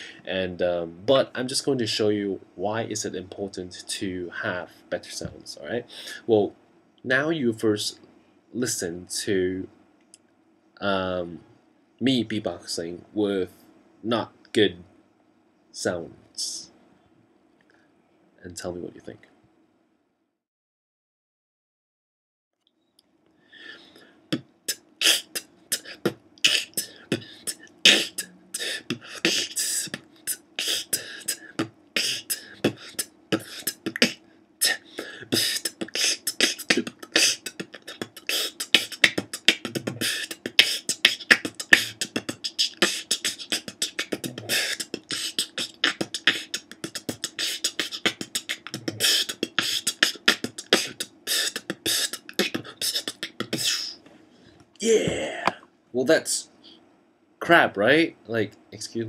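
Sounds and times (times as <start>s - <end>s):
beatboxing: 24.3s - 54.0s.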